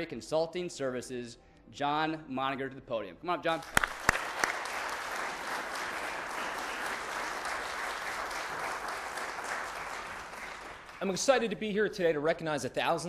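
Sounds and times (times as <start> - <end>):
audience applauding: 3.6 - 11.4.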